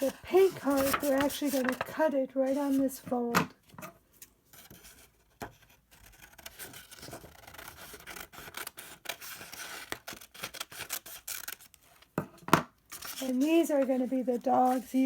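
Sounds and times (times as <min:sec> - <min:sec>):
scissors snipping paper: 0:00.3 - 0:01.8.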